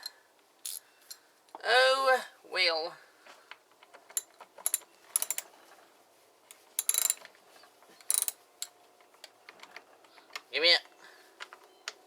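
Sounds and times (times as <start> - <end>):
socket ratchet clicking: 4.1 - 5.5, 6.8 - 7.2, 8.0 - 8.7.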